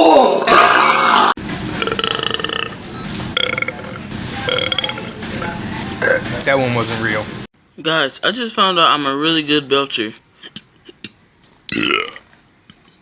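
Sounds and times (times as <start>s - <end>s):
man belching loudly: 1.8s - 2.8s, 3.4s - 5.0s, 6.0s - 6.3s, 11.7s - 12.2s.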